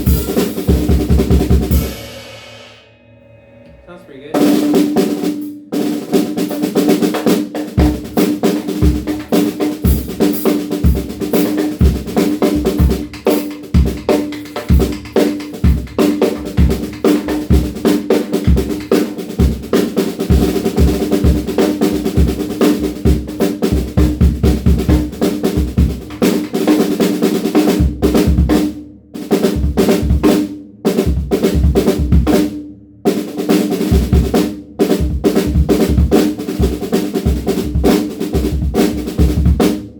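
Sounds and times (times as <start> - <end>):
snare drum strokes and rolls: 0.0 - 2.4, 3.7 - 39.9
steady ring: 2.2 - 5.0.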